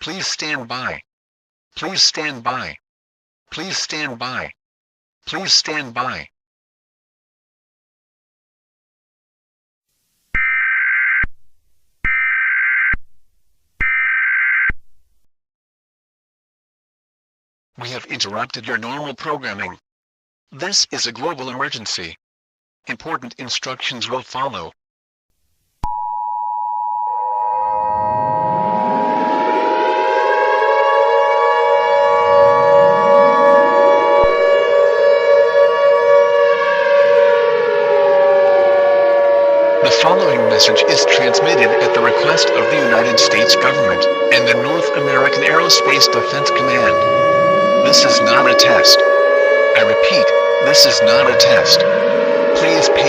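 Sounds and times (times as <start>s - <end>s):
civil defense siren wailing: 26.9s - 53.0s.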